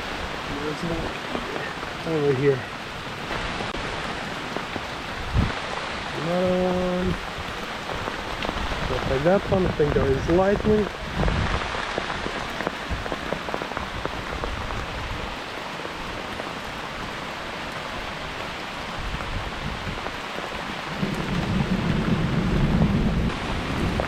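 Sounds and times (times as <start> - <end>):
heavy rain falling: 0.0 - 24.0
rain drops hitting close by: 0.0 - 24.0
thunder rumbling: 20.7 - 24.0.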